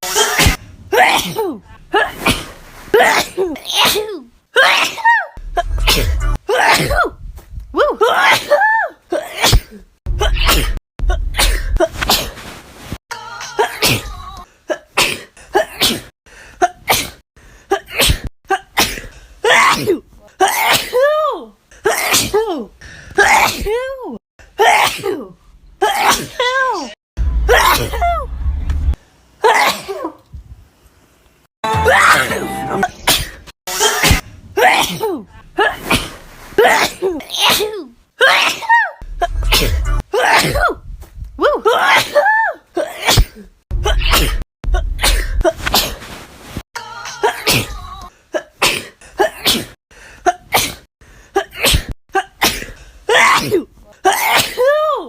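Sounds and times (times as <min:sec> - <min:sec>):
person sneezing: 0:00.0 - 0:07.1, 0:08.1 - 0:12.4, 0:14.7 - 0:21.1, 0:31.7 - 0:40.8, 0:41.8 - 0:46.0, 0:48.3 - 0:54.8.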